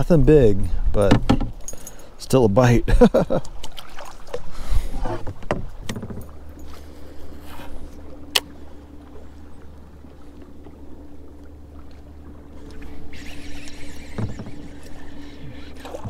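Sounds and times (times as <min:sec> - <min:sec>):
water noise: 0:00.0 - 0:16.0
knocks on kayak: 0:01.0 - 0:01.6
steady low hum: 0:04.4 - 0:16.0.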